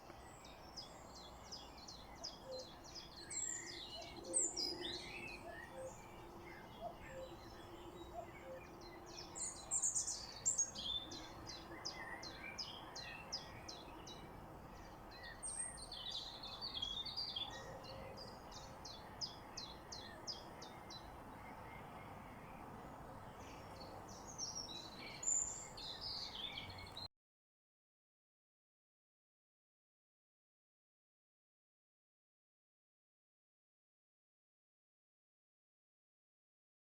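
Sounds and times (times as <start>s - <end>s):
songbirds singing and chirping: 0.0s - 27.1s.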